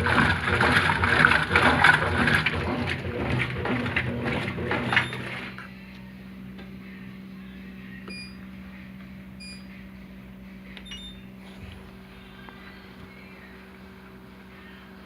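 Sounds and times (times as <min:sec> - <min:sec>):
washing machine churning: 0:00.0 - 0:05.7, 0:10.9 - 0:14.2
steady low hum: 0:00.0 - 0:15.0
short electronic beeps: 0:10.8 - 0:11.3.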